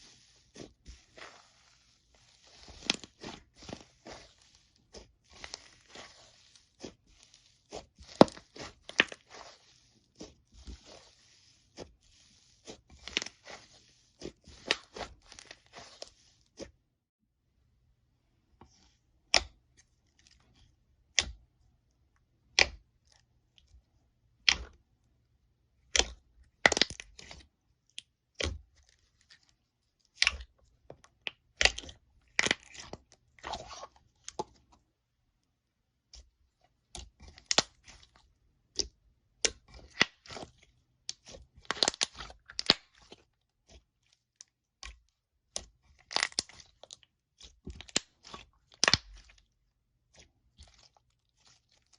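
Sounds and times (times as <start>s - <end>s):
slime popping and crackling: 41.2s - 43.0s, 46.0s - 46.9s, 47.6s - 49.3s.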